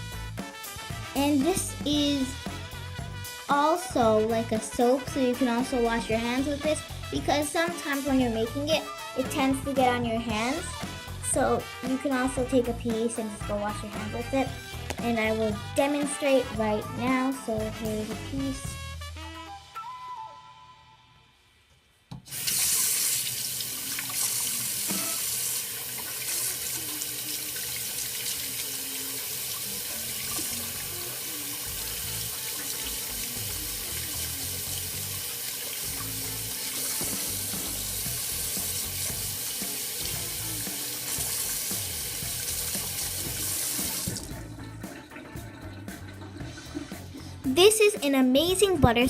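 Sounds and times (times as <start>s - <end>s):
tap water running into sink: 22.2s - 47.4s.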